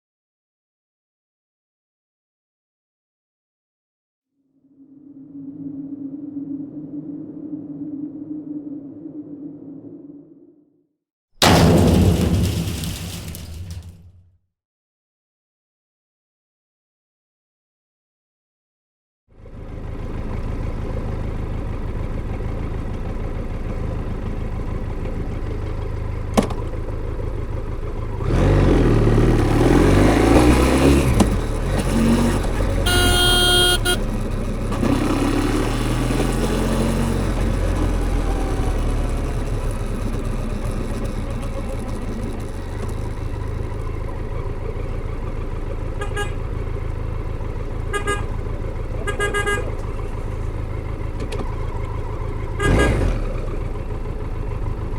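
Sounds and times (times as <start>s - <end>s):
motorcycle engine revving: 19.9s - 54.9s
horn toot: 32.4s - 34.1s, 47.9s - 48.4s, 49.0s - 49.9s, 52.6s - 53.2s.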